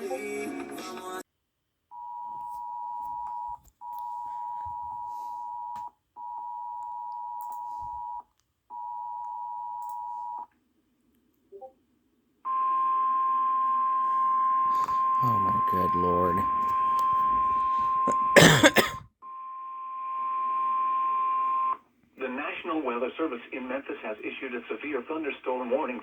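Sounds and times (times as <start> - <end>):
long electronic alert tones: 12.6 - 18.4.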